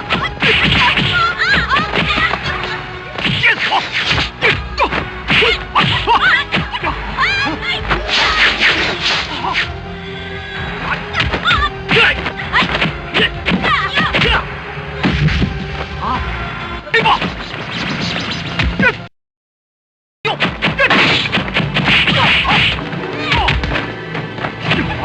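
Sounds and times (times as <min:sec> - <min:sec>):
background music: 0:00.0 - 0:19.1, 0:20.3 - 0:25.0
punch and kick impacts: 0:00.1 - 0:06.7, 0:15.0 - 0:15.6, 0:20.3 - 0:25.0.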